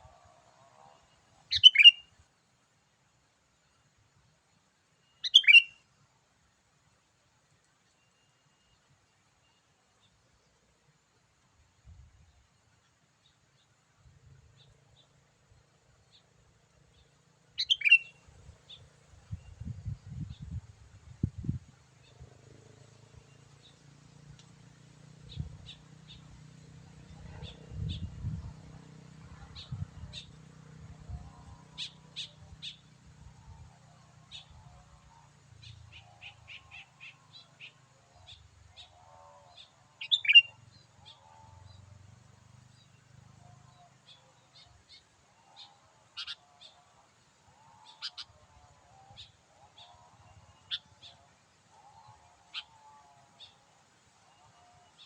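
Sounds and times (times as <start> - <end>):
bulbul chirping: 1.5 - 2.0, 5.2 - 5.7, 17.6 - 18.2
loud sweeping bird call: 1.5 - 2.1, 5.2 - 5.8, 17.6 - 18.2, 39.6 - 41.2, 46.2 - 46.4, 47.8 - 48.3.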